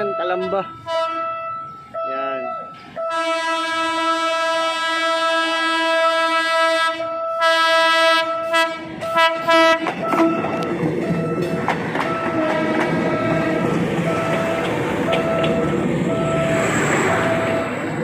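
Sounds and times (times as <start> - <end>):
train rumbling past on tracks: 0.0 - 18.0
train horn blasts: 0.4 - 10.7, 12.1 - 14.6.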